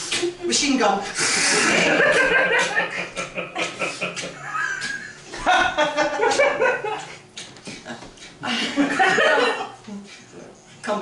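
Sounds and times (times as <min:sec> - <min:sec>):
audience laughing: 0:01.4 - 0:07.2, 0:08.5 - 0:09.8.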